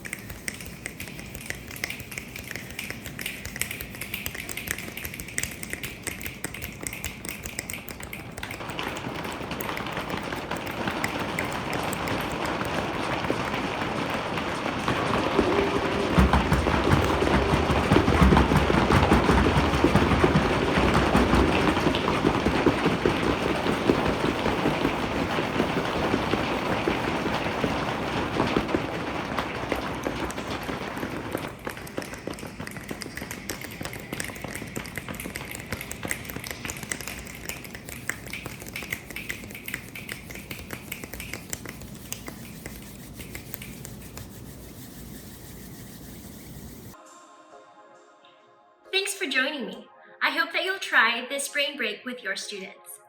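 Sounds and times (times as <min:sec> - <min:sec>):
finger snapping: 0:00.0 - 0:08.7, 0:32.9 - 0:44.4
hands and feet imitating rain: 0:00.0 - 0:46.9.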